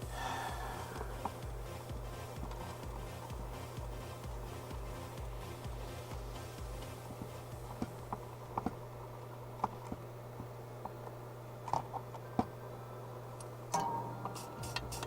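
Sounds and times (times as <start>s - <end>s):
steady low hum: 0.0s - 15.0s
tools and wires clicking: 13.4s - 15.0s.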